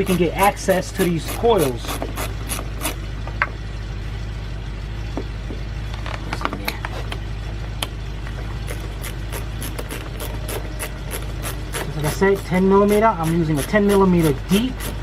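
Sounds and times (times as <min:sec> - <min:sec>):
steady low hum: 0:00.0 - 0:15.0
ratchet clicking: 0:01.2 - 0:03.0, 0:08.7 - 0:15.0.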